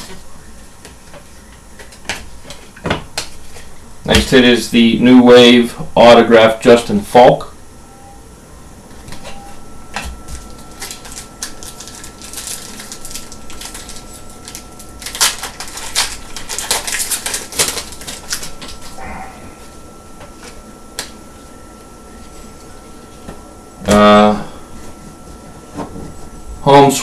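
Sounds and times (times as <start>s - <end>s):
cards and wrappers clicking and crinkling: 10.3s - 19.0s.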